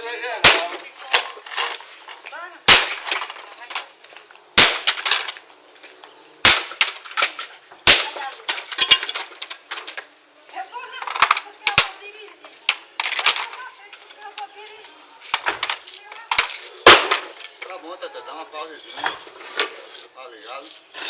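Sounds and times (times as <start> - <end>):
bonfire crackling: 0.0 - 21.0
loud sharp bangs: 2.7 - 3.2, 4.6 - 5.2, 6.4 - 8.2, 16.8 - 17.4.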